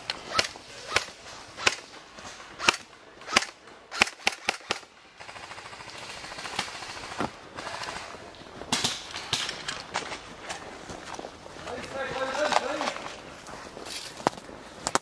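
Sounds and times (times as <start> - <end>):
airsoft guns firing: 0.2 - 1.9, 2.6 - 9.6.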